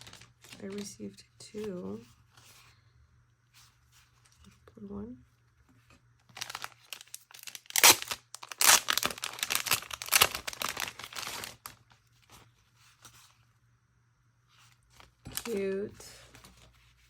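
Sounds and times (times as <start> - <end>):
plastic packaging crinkling: 0.0 - 1.0, 6.3 - 13.1, 14.6 - 16.7.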